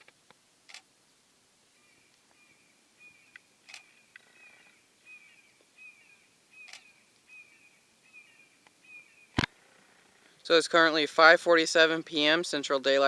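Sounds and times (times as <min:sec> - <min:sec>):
camera shutter click: 0:03.7 - 0:04.0, 0:06.6 - 0:06.9.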